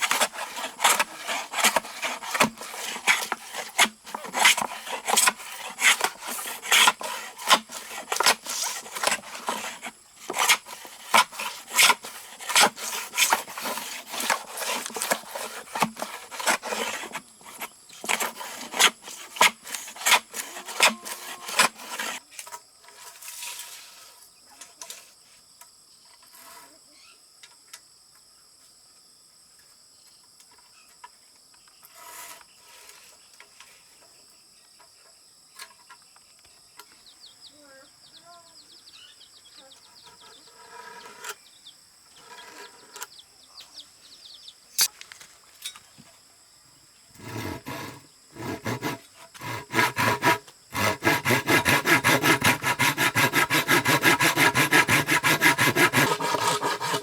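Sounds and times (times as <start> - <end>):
knocking and scraping on wood: 0.0 - 22.2, 47.2 - 57.0
insects trilling: 29.6 - 57.0.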